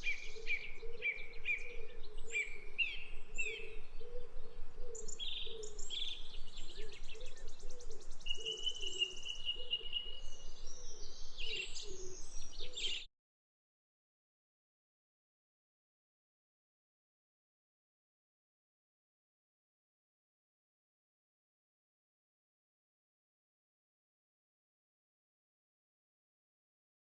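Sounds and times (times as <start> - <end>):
birds singing and calling: 0.0 - 13.1.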